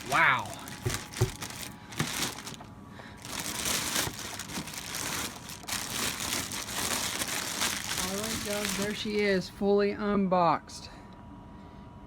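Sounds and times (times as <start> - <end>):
plastic wrap and cardboard crinkling: 0.0 - 9.3.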